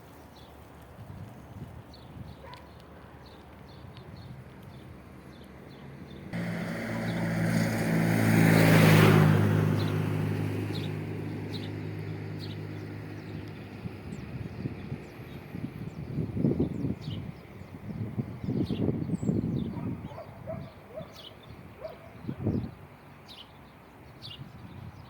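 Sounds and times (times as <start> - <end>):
vehicle passing by: 5.3 - 16.0.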